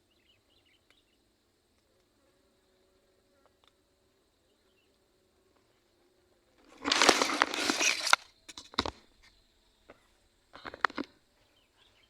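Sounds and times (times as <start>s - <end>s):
faint insect drone: 0.0s - 12.0s
rustling and crackling: 6.6s - 11.2s.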